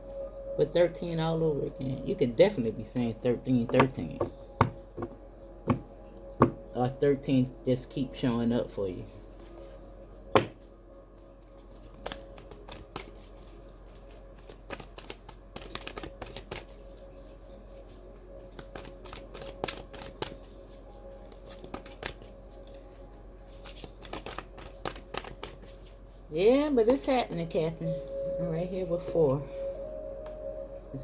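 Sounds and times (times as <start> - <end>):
cards shuffling: 11.6 - 20.5, 21.1 - 22.4, 23.5 - 26.0.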